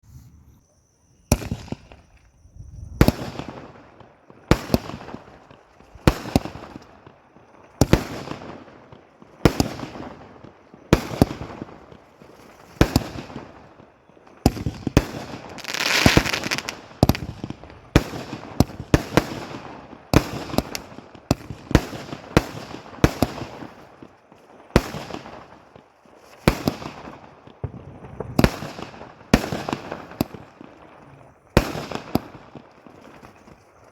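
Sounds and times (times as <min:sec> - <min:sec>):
firework bangs: 0:01.3 - 0:02.2, 0:03.0 - 0:30.9, 0:31.5 - 0:33.3
firework hiss: 0:14.5 - 0:20.9.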